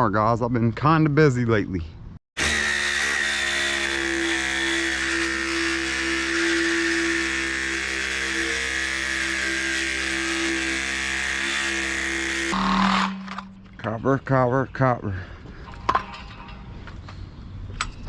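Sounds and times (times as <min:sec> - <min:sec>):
motor humming with whine: 0:02.4 - 0:13.7.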